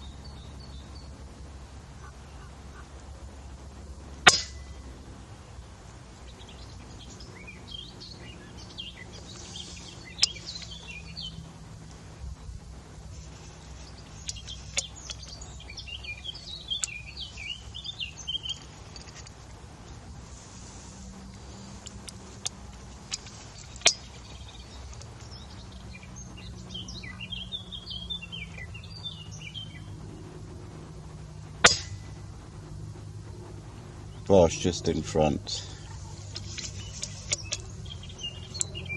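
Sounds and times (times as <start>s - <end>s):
birds chirping: 0.0s - 38.9s
air rifle shot: 4.2s - 4.7s, 31.6s - 32.1s
sharp clicks: 36.3s - 38.9s.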